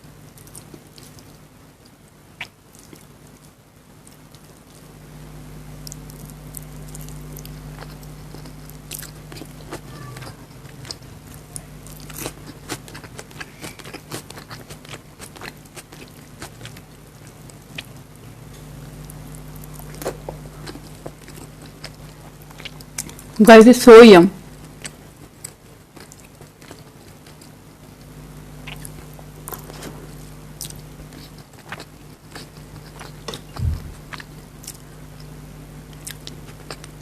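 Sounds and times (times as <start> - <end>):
steady low hum: 0.0 - 37.0
wet chewing and crunching: 0.3 - 4.9, 5.8 - 18.2, 18.9 - 23.4, 24.6 - 37.0.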